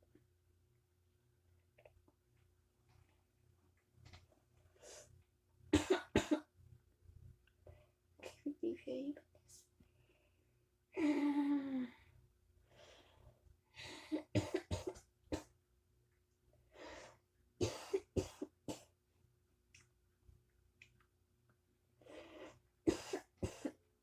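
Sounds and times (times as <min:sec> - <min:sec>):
person coughing: 0:05.8 - 0:06.5, 0:14.1 - 0:15.5, 0:17.6 - 0:18.9, 0:22.9 - 0:23.8.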